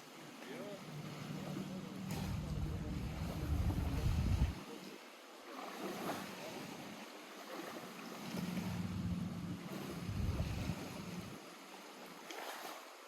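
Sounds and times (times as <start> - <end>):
water lapping against shore: 0.0 - 13.0
low rumble: 1.0 - 4.6, 8.4 - 11.4.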